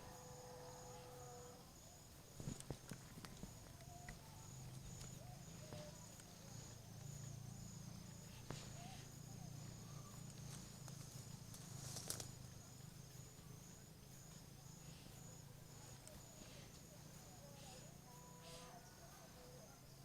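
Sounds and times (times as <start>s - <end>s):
faint low hum: 0.0s - 20.0s
brief rustle: 11.5s - 12.4s.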